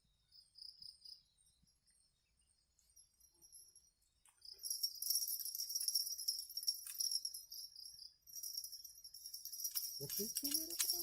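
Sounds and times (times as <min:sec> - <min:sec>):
crickets chirping: 0:02.5 - 0:11.0.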